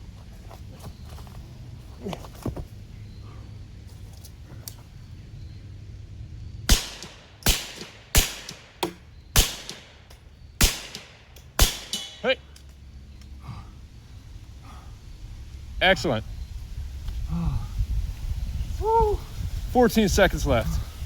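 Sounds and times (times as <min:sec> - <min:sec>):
faint low hum: 0:00.0 - 0:21.0
suppressed gunshots: 0:06.6 - 0:12.2.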